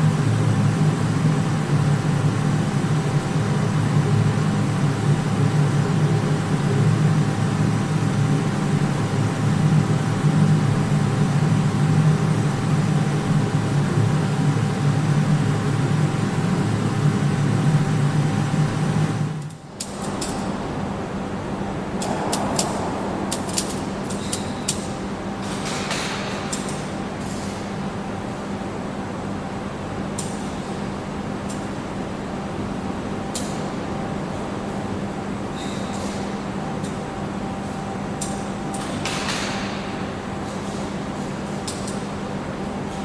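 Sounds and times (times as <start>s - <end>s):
industrial machinery humming: 20.0s - 26.5s.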